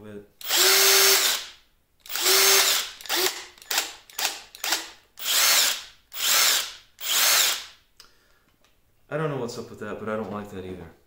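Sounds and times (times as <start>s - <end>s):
impact driver revving: 0.4s - 1.5s, 2.1s - 7.7s.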